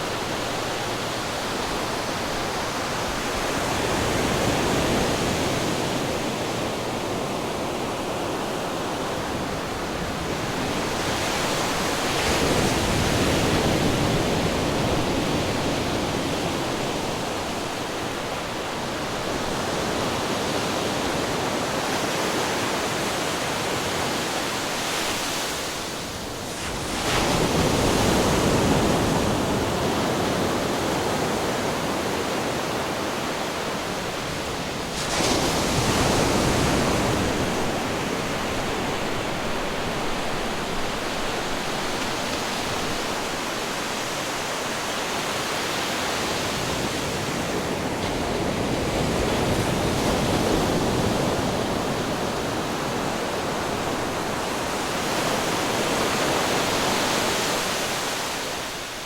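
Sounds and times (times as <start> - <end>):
surf washing: 0.0 - 59.0
waves crashing on rocks: 31.5 - 59.0.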